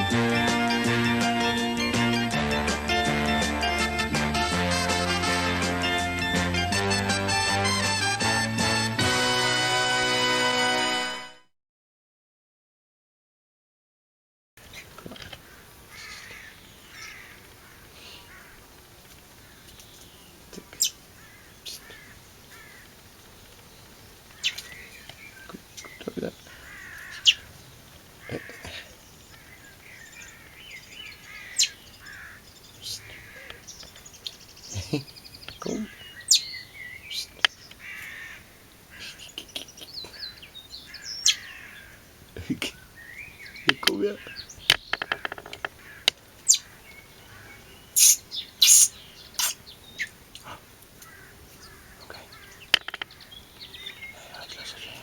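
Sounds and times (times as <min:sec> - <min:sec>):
birds chirping: 0:14.6 - 0:55.0
blackbird sharp calls: 0:14.7 - 0:55.0.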